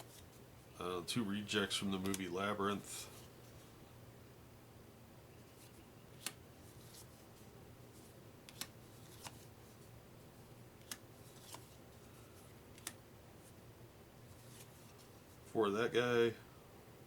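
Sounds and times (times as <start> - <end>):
cards sliding rustles: 0.0 - 0.7, 1.7 - 3.8, 5.5 - 13.6, 14.2 - 15.5.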